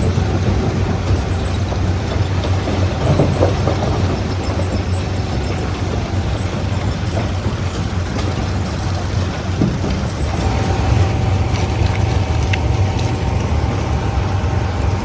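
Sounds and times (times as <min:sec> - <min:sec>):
stone crusher rumbling: 0:00.0 - 0:15.0
faint steady whine: 0:10.2 - 0:15.0.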